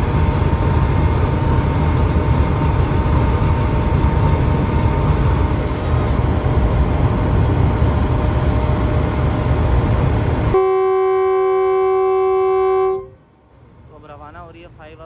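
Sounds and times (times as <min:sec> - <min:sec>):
diesel locomotive rumbling: 0:00.0 - 0:15.0
locomotive horn blast: 0:10.5 - 0:13.2.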